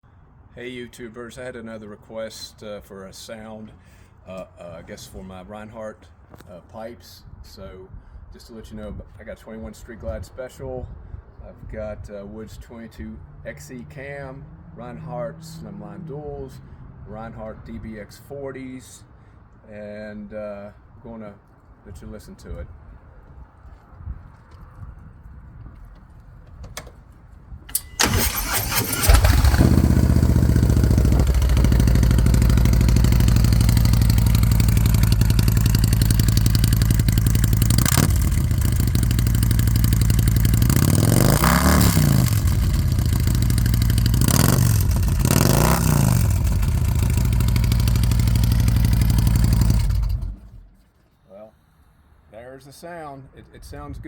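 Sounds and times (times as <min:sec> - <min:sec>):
motorcycle starter cranking: 0:27.7 - 0:50.6
motorcycle engine idling and revving: 0:27.7 - 0:50.7.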